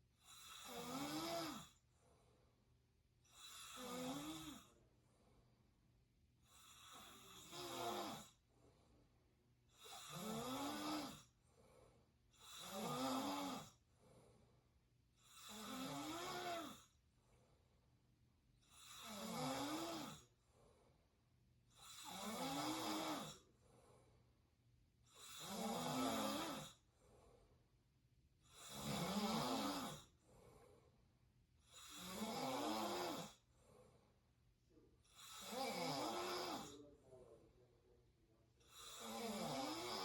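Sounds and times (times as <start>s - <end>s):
person snoring: 0.3s - 1.8s, 3.3s - 4.8s, 6.4s - 8.4s, 9.7s - 11.3s, 12.4s - 13.8s, 15.2s - 16.9s, 18.7s - 20.3s, 21.7s - 23.5s, 25.1s - 26.8s, 28.4s - 30.1s, 31.7s - 33.4s, 35.0s - 37.0s, 38.6s - 40.0s
faint breathing: 1.8s - 2.9s, 8.4s - 9.7s, 11.2s - 12.4s, 13.8s - 15.0s, 20.2s - 21.4s, 23.4s - 24.7s, 26.7s - 27.9s, 30.0s - 31.3s, 33.4s - 35.2s.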